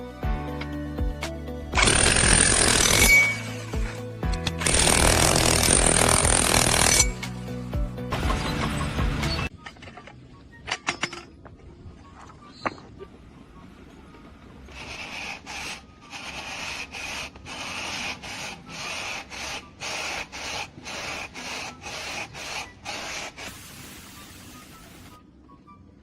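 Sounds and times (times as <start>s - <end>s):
rhythmic scraping strokes: 14.7s - 23.6s
steady hiss: 23.0s - 25.2s.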